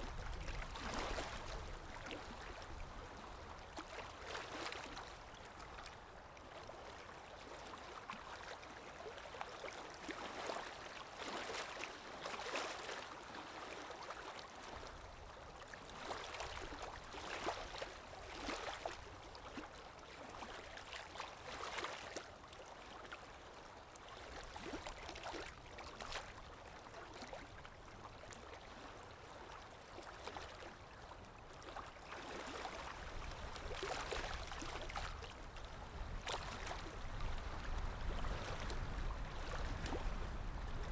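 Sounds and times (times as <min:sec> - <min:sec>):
water sloshing and splashing: 0:00.0 - 0:05.9, 0:06.6 - 0:40.9.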